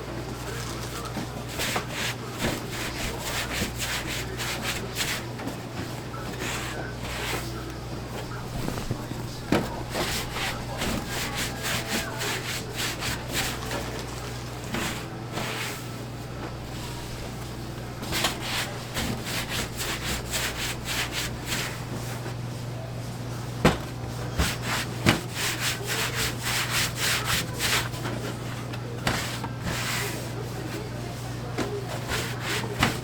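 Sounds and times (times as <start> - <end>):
rubbing on wooden surface: 0.3 - 33.0.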